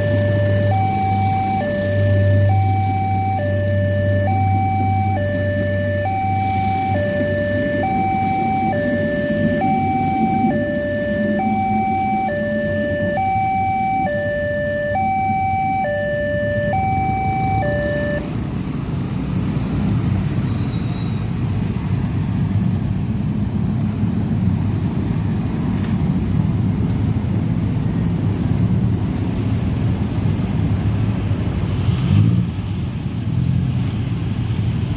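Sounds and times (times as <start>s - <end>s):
crossing siren two-tone wail: 0.0s - 18.3s
engine rising in pitch: 0.0s - 18.4s
road traffic rumble: 0.0s - 34.9s.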